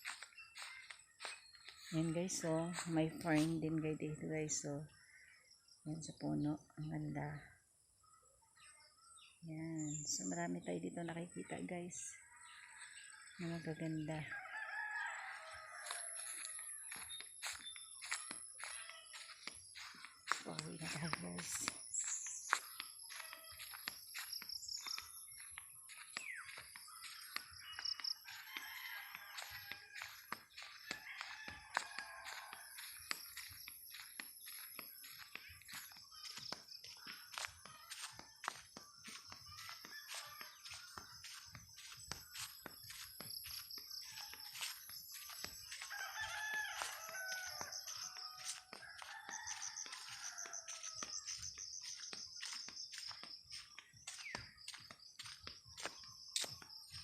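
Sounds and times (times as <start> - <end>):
footsteps: 0.0 - 3.8, 12.8 - 57.0
small birds chirping: 0.0 - 57.0
rooster crowing: 14.3 - 16.4, 28.2 - 33.0, 45.8 - 51.3.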